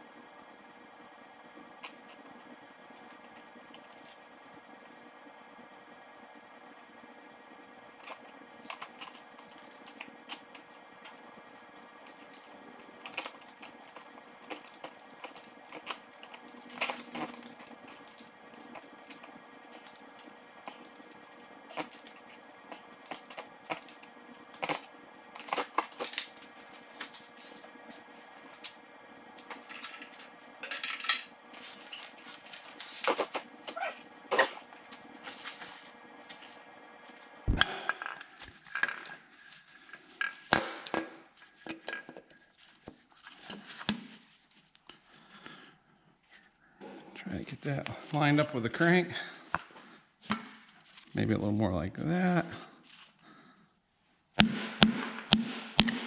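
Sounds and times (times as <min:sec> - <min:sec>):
faint steady hum: 0:00.0 - 0:40.4
metal tools clinking: 0:08.0 - 0:28.8, 0:29.4 - 0:37.5.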